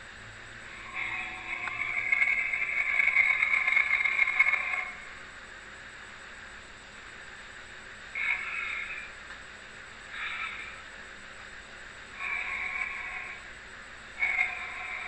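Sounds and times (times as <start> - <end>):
dinosaur call: 0.7 - 5.1, 8.2 - 9.2, 10.1 - 10.8, 12.2 - 13.4, 14.2 - 15.0.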